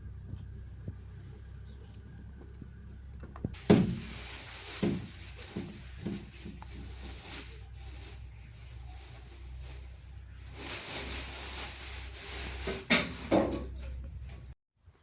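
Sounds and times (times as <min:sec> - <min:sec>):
low hum: 0:00.0 - 0:05.2.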